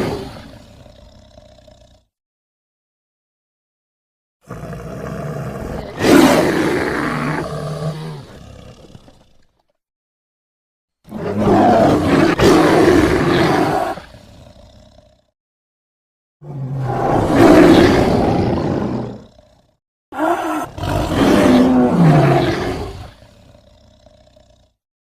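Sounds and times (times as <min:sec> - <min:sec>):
large wild animal roaring: 0:00.0 - 0:02.1, 0:04.4 - 0:09.6, 0:11.1 - 0:15.3, 0:16.4 - 0:24.8.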